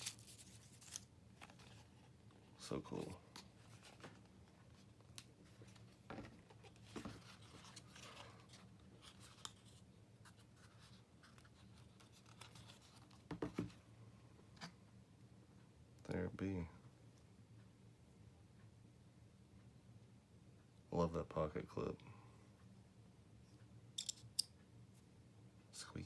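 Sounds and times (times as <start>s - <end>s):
packaging scrapes and rustles: 0.0s - 1.9s.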